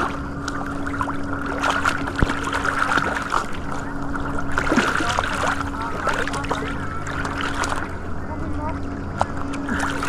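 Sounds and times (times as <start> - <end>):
steady hum: 0.0 - 10.0
water lapping and splashing: 0.0 - 10.0.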